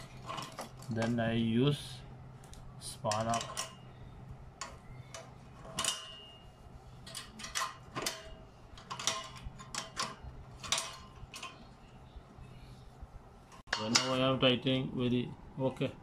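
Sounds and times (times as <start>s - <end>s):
spanner clicking on metal: 3.1s - 3.8s, 4.6s - 6.4s, 7.0s - 11.8s.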